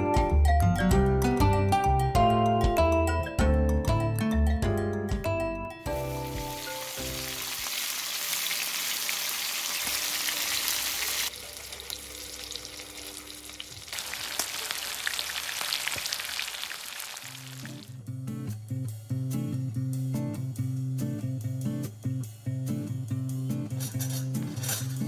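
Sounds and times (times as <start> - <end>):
food sizzling in hot oil: 5.9 - 18.0.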